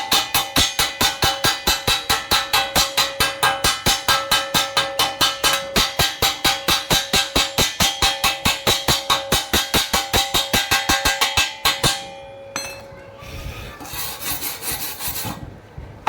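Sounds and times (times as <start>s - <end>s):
hammer striking steel pipe: 0.0s - 12.9s.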